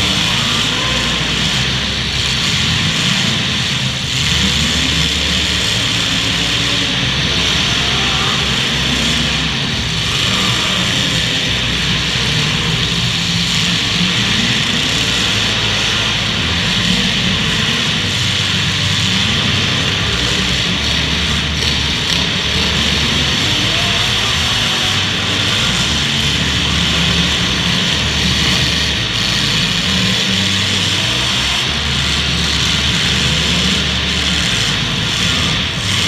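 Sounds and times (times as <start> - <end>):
car engines revving loudly: 0.0 - 36.0.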